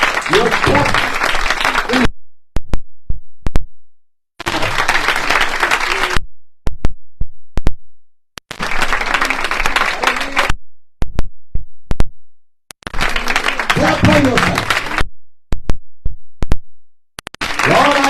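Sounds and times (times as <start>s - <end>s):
congregation clapping: 0.0s - 2.1s, 4.4s - 6.2s, 8.5s - 10.5s, 12.9s - 15.0s, 17.4s - 18.0s.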